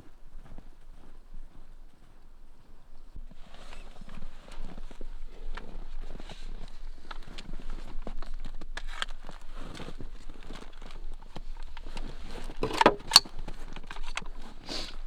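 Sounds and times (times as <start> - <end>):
small crackles and rustles: 0.0 - 15.0
sharp metallic rifle clacks: 12.5 - 14.3.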